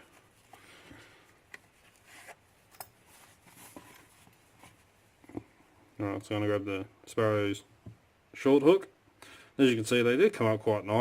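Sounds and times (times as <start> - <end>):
rustling: 0.0 - 5.6.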